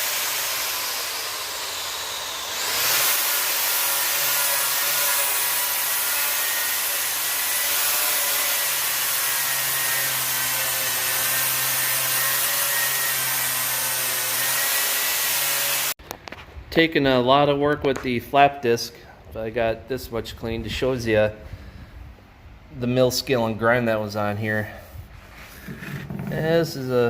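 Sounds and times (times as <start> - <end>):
angle grinder grinding steel: 0.0 - 16.0.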